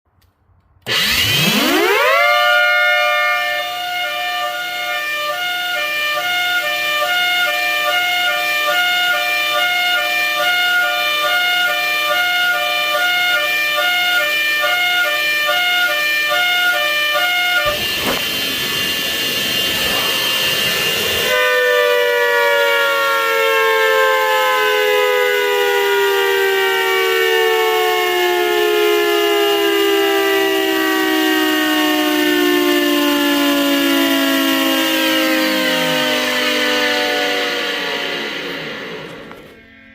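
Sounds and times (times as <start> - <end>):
imitated siren: 0.8 - 39.9
noisy rush: 17.6 - 21.4, 35.8 - 39.9.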